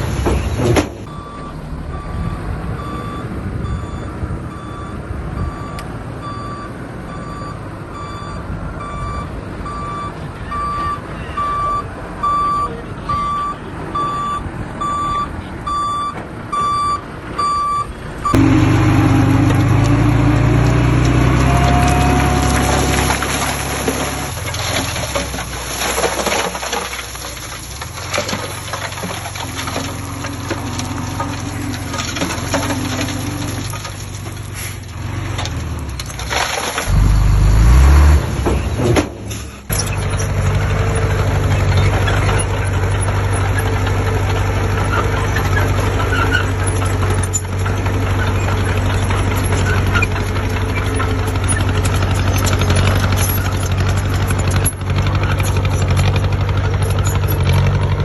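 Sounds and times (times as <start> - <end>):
heavy vehicle engine rumble: 0.0 - 58.0
reversing alarm beeping: 1.1 - 19.4.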